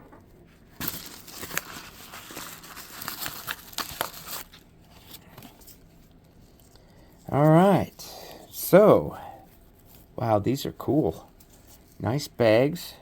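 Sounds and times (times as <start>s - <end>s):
packaging crinkling and rustling: 0.5s - 7.4s.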